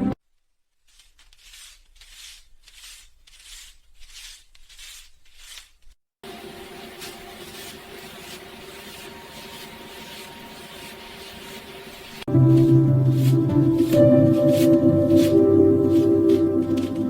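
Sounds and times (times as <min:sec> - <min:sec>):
banknotes swishing: 0:00.8 - 0:17.0
steady hissing: 0:06.2 - 0:17.0.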